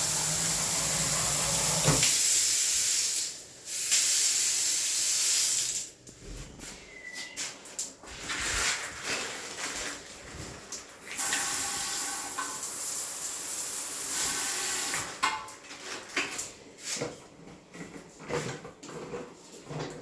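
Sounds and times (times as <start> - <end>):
faint whistle: 6.7 - 7.5.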